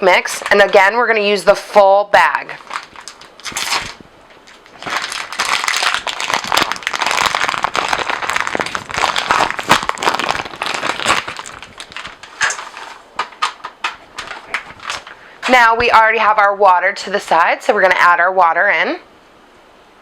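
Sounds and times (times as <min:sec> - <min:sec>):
plastic bag crinkling: 0:00.2 - 0:01.1, 0:02.5 - 0:15.7.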